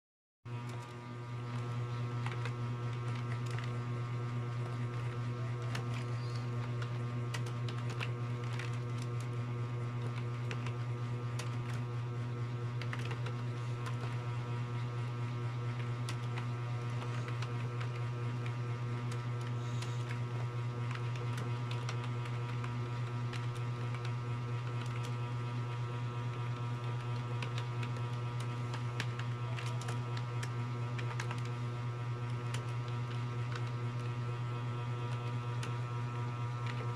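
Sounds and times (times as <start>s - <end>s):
electrical hum: 0.5s - 36.9s
keyboard typing clicks: 12.7s - 14.2s, 26.5s - 31.5s.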